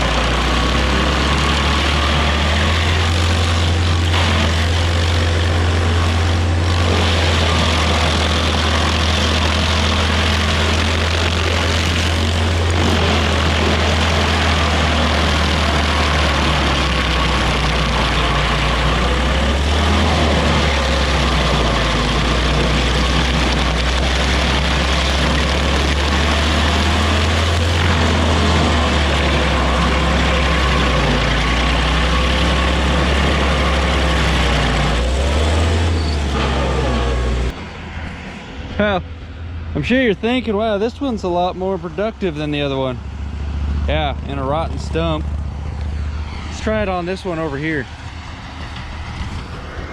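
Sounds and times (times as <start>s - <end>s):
cutter wheel grinding rasp: 0.0s - 37.6s
stump grinder engine running hard: 0.0s - 37.7s, 39.7s - 49.9s.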